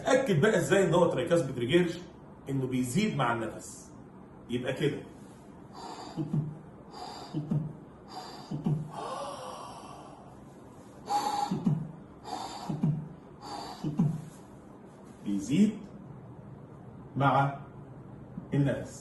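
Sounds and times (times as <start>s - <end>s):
breath drawn in: 5.3s - 15.2s
heartbeat murmur: 6.1s - 6.6s, 8.5s - 9.0s, 12.6s - 14.3s.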